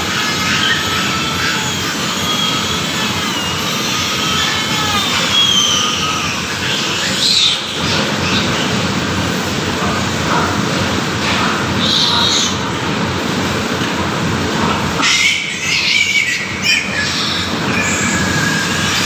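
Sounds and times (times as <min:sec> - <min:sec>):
piglet squealing: 0:00.2 - 0:08.8, 0:15.0 - 0:19.0.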